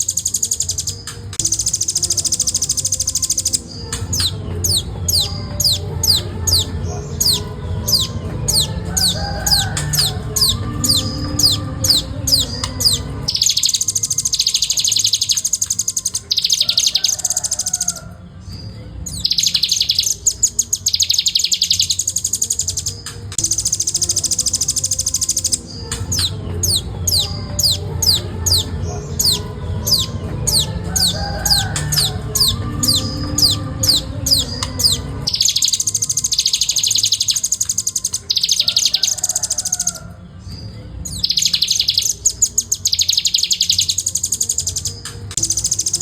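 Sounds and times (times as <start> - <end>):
bird high-pitched trills: 0.0 - 46.0.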